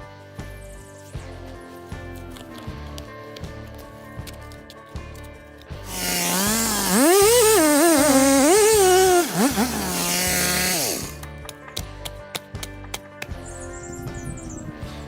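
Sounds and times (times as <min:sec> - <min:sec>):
chainsaw revving: 0:05.9 - 0:11.2.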